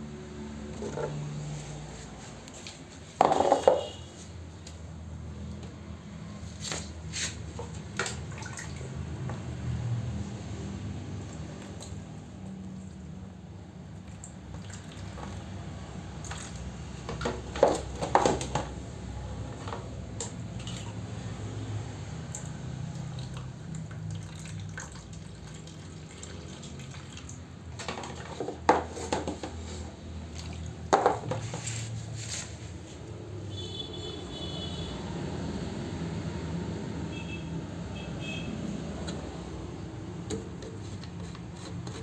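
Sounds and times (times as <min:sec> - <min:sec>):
water splashing and dripping: 0:06.7 - 0:10.0, 0:10.6 - 0:13.2, 0:13.9 - 0:18.6, 0:20.2 - 0:21.1, 0:22.2 - 0:28.6, 0:30.2 - 0:31.2.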